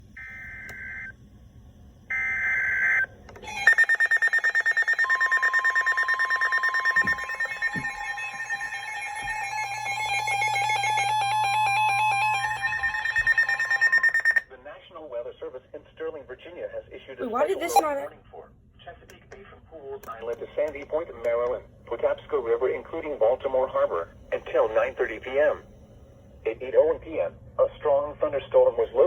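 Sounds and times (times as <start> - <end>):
steady warning alarm tone: 0.1 - 1.2, 2.1 - 14.4
radio alarm beeping: 2.1 - 8.9, 9.8 - 14.4, 17.4 - 18.1.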